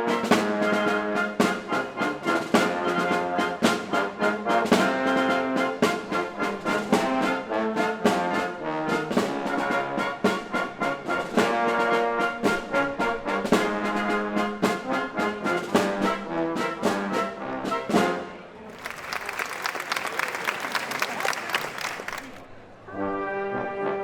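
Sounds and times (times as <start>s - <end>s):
symphony orchestra with brass: 0.0s - 24.0s.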